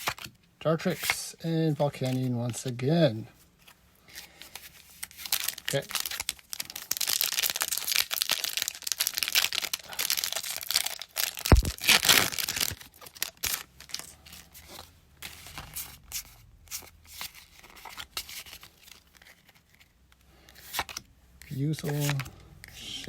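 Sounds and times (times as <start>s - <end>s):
cards rustling and clicking: 0.0s - 2.9s, 3.6s - 23.0s
foil wrapper tearing and crinkling: 5.0s - 14.1s.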